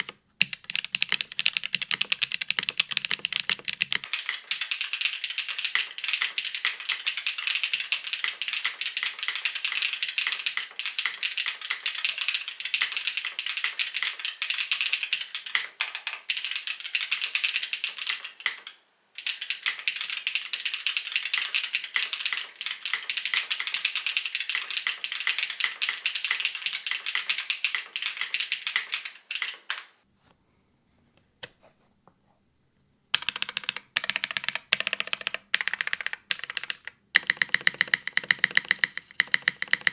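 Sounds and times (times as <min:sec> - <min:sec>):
mechanical keyboard typing: 0:00.0 - 0:29.9, 0:33.1 - 0:39.9.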